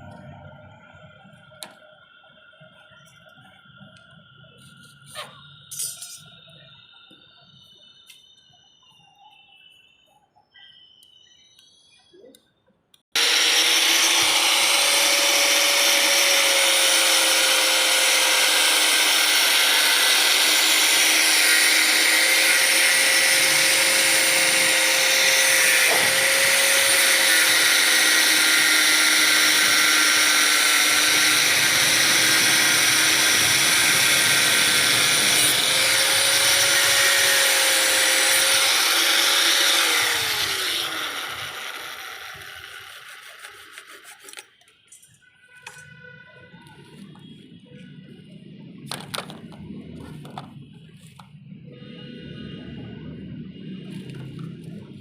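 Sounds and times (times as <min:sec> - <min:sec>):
power tool motor whining: 0:13.1 - 0:44.6.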